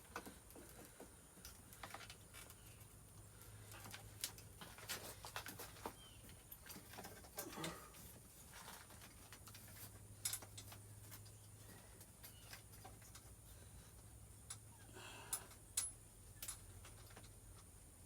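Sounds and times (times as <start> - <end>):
small parts clicking and tapping: 8.5 - 11.4, 14.0 - 14.7, 15.3 - 17.7.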